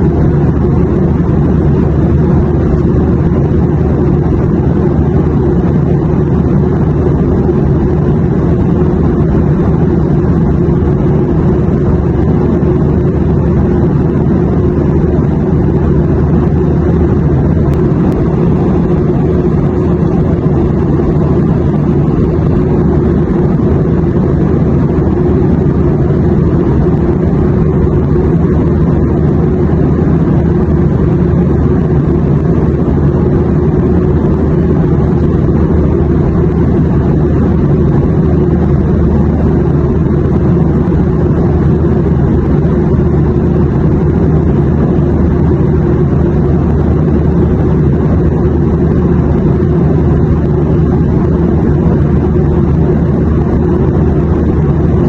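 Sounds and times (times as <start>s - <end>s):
jet engine cabin hum: 0.0s - 55.0s.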